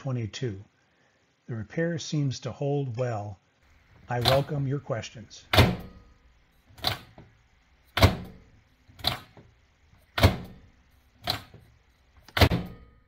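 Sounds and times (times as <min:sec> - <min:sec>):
latch knocking: 0:04.0 - 0:04.6, 0:05.5 - 0:06.1, 0:07.9 - 0:12.9
microwave door slamming shut: 0:04.1 - 0:04.6, 0:05.5 - 0:06.1, 0:06.8 - 0:07.3, 0:07.9 - 0:09.5, 0:10.1 - 0:11.6, 0:12.2 - 0:13.0.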